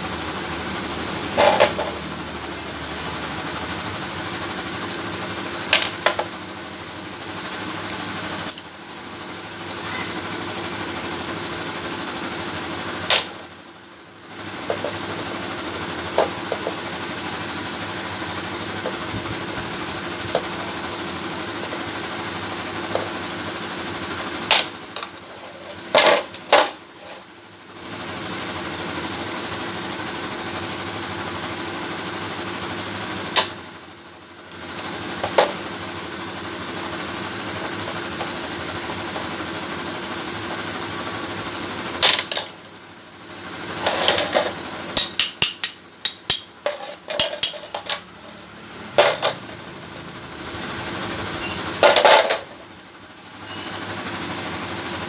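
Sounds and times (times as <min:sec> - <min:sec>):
small machine running: 0:00.0 - 0:55.0
sharp clicks and knocks: 0:43.9 - 0:48.1.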